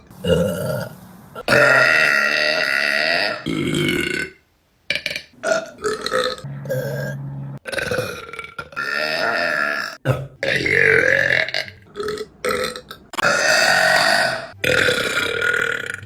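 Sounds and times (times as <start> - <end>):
women burping: 0.2 - 4.3.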